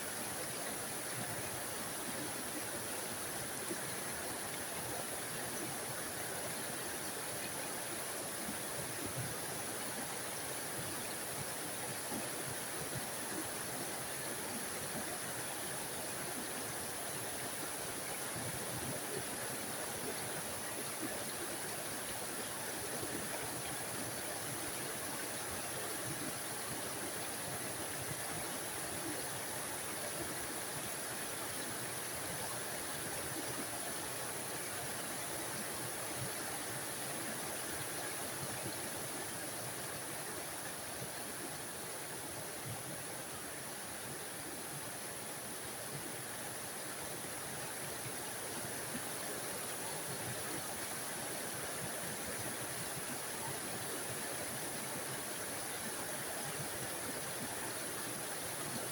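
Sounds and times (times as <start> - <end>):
small waterfall splashing: 0.0 - 58.9.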